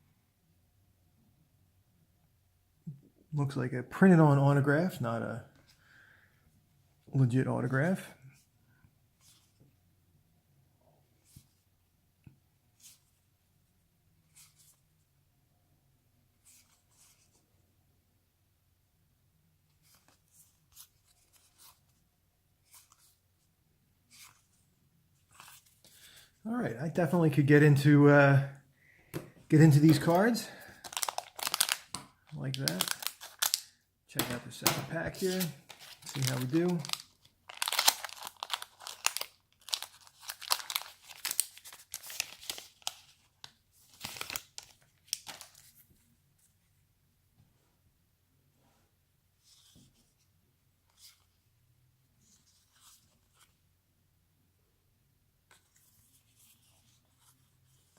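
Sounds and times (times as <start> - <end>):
wrapper tearing and crinkling: 29.8 - 43.2, 43.8 - 45.7.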